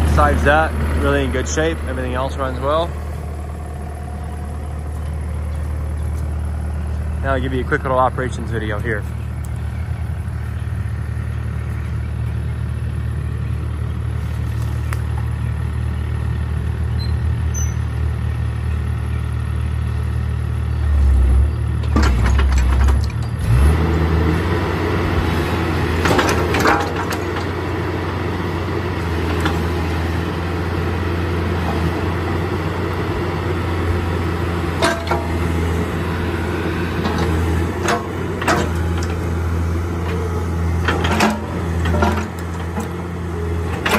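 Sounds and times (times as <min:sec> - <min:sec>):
diesel engine running: 0:00.0 - 0:43.9
metallic clanks: 0:26.0 - 0:27.6, 0:34.8 - 0:35.4, 0:37.0 - 0:39.3, 0:40.8 - 0:43.0.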